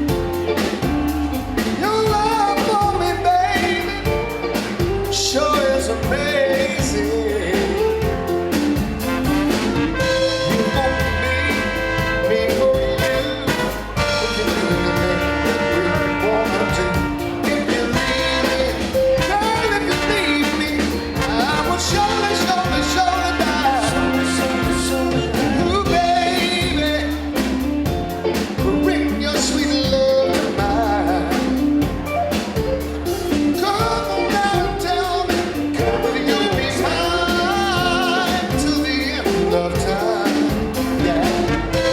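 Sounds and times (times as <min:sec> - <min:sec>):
person singing: 0:00.0 - 0:41.9
steady bass line: 0:00.0 - 0:41.9
horns: 0:08.5 - 0:27.6, 0:33.3 - 0:41.9.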